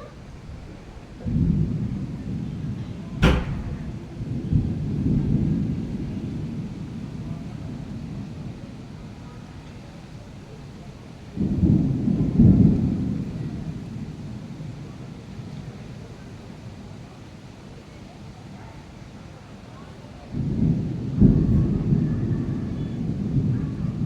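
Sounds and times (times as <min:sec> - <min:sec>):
thunder rumbling: 0:00.0 - 0:10.1, 0:11.2 - 0:16.0, 0:20.3 - 0:24.0
thunder crack: 0:00.4 - 0:08.5, 0:11.4 - 0:14.1.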